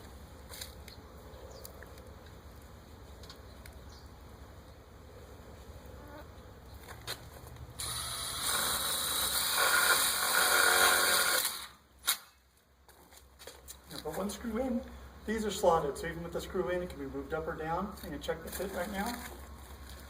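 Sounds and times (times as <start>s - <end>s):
power driver driving screw: 7.8s - 11.7s.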